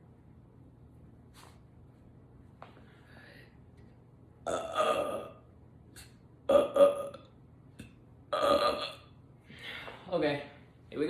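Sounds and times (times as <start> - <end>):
woman belching: 4.5 - 5.4, 6.5 - 7.3, 8.3 - 9.1.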